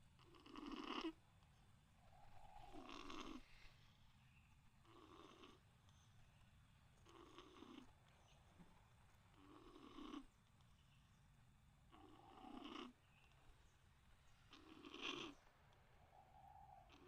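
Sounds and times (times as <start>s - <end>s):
soft snoring: 0.2s - 1.2s, 2.0s - 3.8s, 4.8s - 5.6s, 7.1s - 7.9s, 9.4s - 10.3s, 11.9s - 13.0s, 14.5s - 15.4s.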